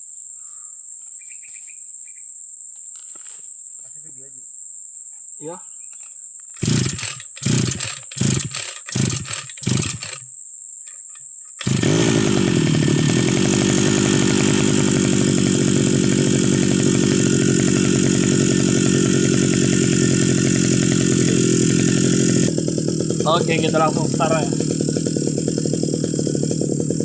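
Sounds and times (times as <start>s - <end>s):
brush cutter engine pull-starting: 6.6s - 10.3s, 10.9s - 27.0s.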